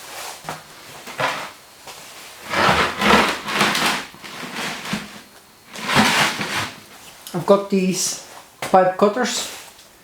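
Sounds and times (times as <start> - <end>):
scraping and rummaging among tools: 0.5 - 1.6, 2.4 - 7.1.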